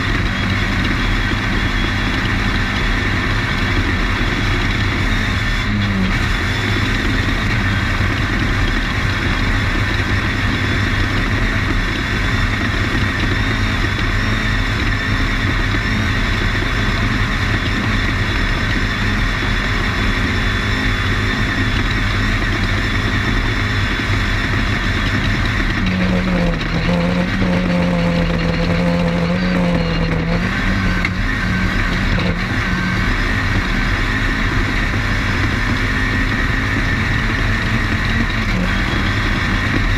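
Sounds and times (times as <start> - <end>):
race car engine running hard: 0.0 - 39.9.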